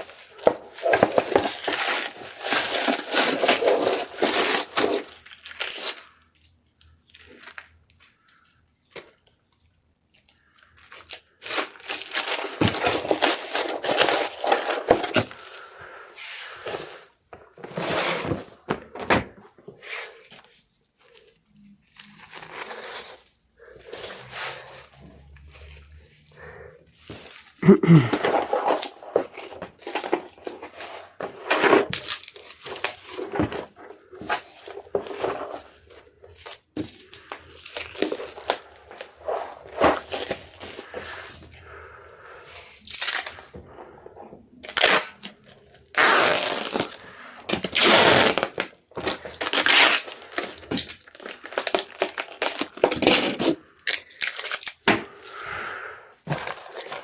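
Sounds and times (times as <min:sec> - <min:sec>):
plastic wrap crinkling: 0:00.0 - 0:43.6, 0:44.5 - 0:57.0
tearing: 0:44.6 - 0:54.8.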